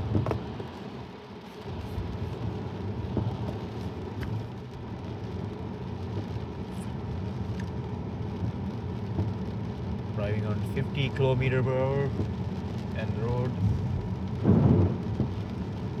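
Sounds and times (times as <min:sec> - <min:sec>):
road and tyre rumble in car: 0:00.0 - 0:16.0.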